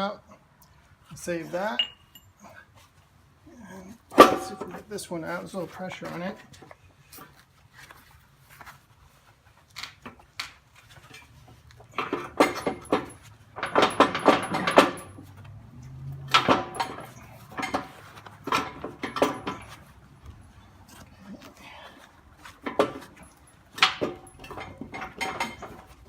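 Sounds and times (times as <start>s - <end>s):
metal-on-metal clanks: 1.6s - 2.4s, 4.1s - 4.9s, 11.9s - 20.0s, 22.6s - 26.0s.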